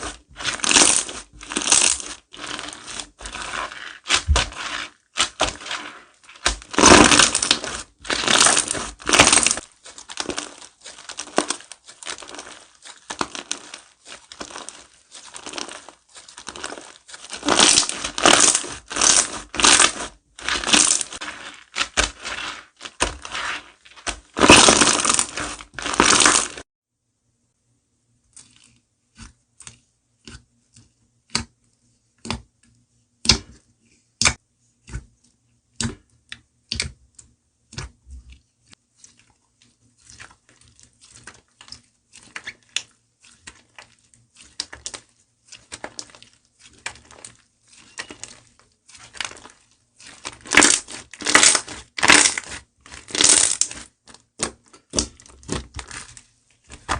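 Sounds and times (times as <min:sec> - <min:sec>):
slime crackling and crunching: 0:00.0 - 0:26.6, 0:39.0 - 0:56.9.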